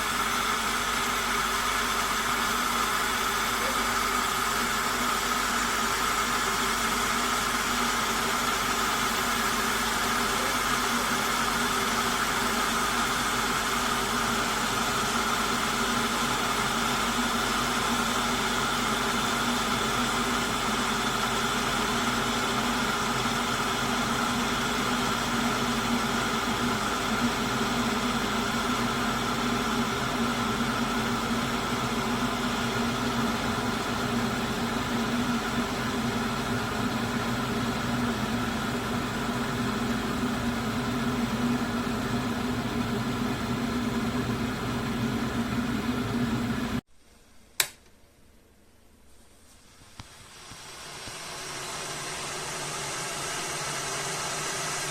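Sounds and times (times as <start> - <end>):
kettle heating water: 0.0 - 46.8, 49.8 - 54.9
kettle switch click: 47.6 - 47.9.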